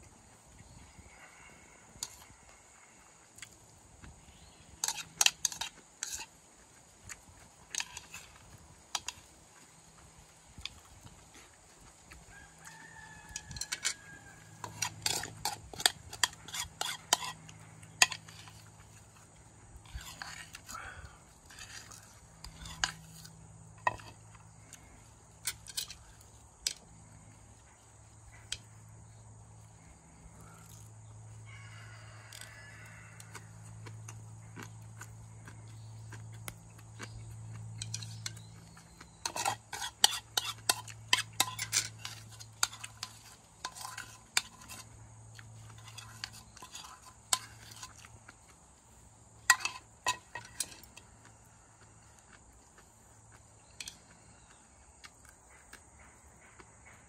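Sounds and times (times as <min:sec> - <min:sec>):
cutlery clinking against a dish: 0:04.8 - 0:06.3, 0:14.6 - 0:18.6, 0:37.8 - 0:44.9, 0:49.4 - 0:51.0.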